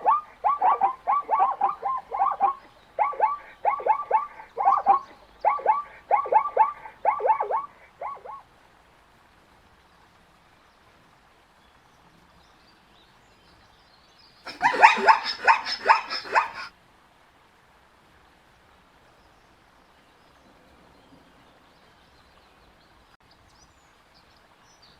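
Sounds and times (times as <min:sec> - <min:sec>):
zebra barking calls: 0:00.0 - 0:08.4, 0:14.5 - 0:16.7.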